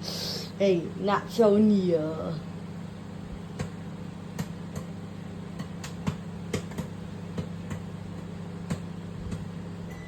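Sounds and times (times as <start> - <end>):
microwave oven humming: 0.0 - 10.0
popcorn popping: 3.4 - 10.0.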